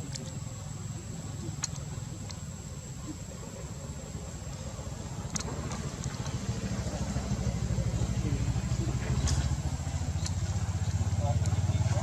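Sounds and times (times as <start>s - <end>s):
faint clicks: 0.0s - 0.6s, 1.3s - 3.2s, 5.2s - 6.5s, 8.8s - 11.6s
engine pulsing rumble: 0.0s - 12.0s.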